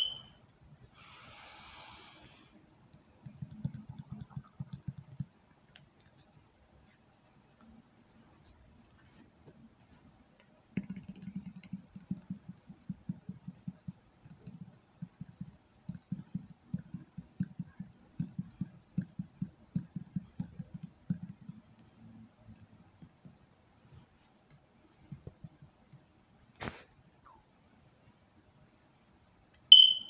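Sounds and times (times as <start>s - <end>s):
fingertips tapping on object: 2.9s - 6.4s, 8.4s - 23.5s.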